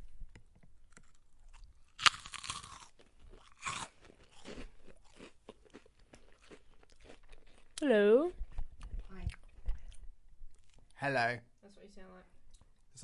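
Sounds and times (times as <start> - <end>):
biting into crunchy food: 0.9 - 7.8
chewing crunches: 0.9 - 7.8.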